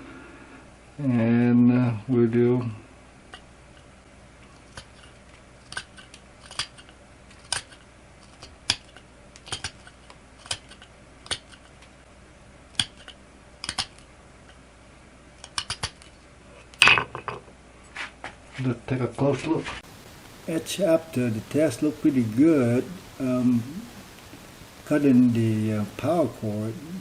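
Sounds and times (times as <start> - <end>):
knife scraping antler: 4.5 - 11.7.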